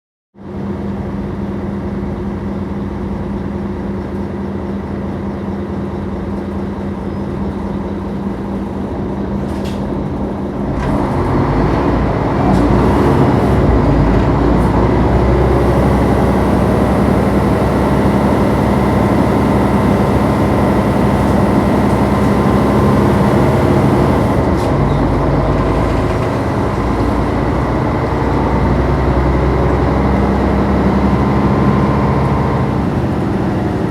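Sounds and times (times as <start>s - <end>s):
diesel bus engine humming: 0.4s - 33.9s
road noise: 7.5s - 33.9s.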